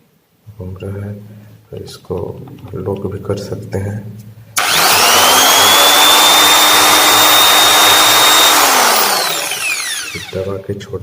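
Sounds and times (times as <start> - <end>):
electric drill whining: 4.6 - 10.5.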